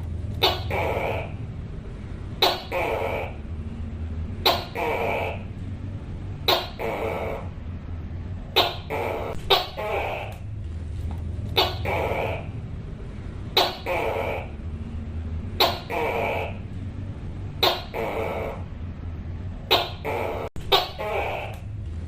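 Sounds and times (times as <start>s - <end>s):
gecko calling: 0.4s - 1.5s, 2.4s - 3.6s, 4.4s - 5.6s, 6.4s - 7.6s, 8.5s - 10.5s, 11.5s - 12.6s, 13.5s - 14.6s, 15.5s - 16.7s, 17.6s - 18.8s, 19.7s - 21.7s.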